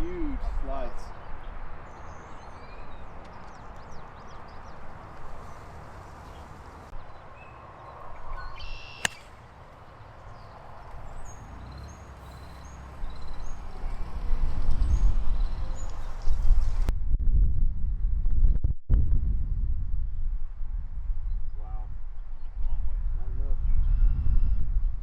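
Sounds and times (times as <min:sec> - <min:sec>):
faint bird chirps: 0:05.4 - 0:09.4, 0:10.0 - 0:13.6
sharp click: 0:09.0 - 0:09.3.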